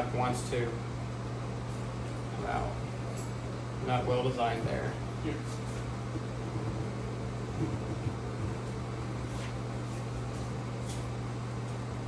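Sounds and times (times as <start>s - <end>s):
motor humming: 1.8s - 11.8s.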